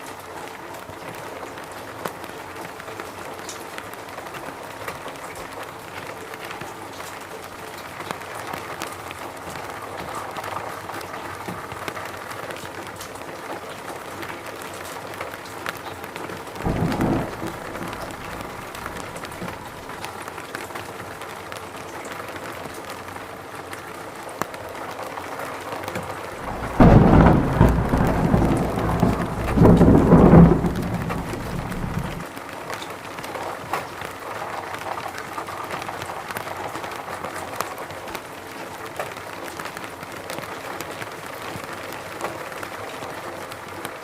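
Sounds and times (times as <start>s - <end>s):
rain falling in forest: 0.0s - 44.0s
thunder rumbling: 16.6s - 20.3s, 26.3s - 32.2s.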